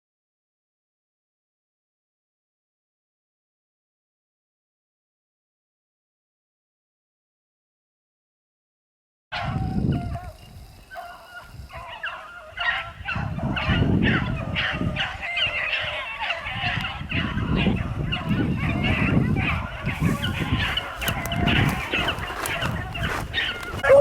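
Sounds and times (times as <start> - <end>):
dogs baying: 9.3 - 24.0.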